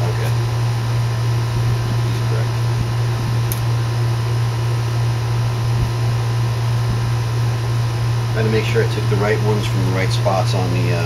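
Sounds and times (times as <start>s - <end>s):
machinery droning hum: 0.0s - 11.0s.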